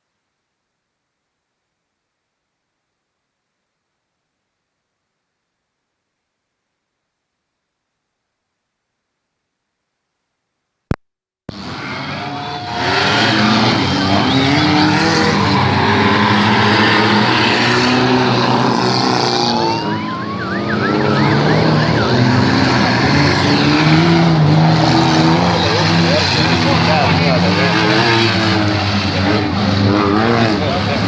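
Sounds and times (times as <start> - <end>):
car engines revving: 11.5 - 31.0.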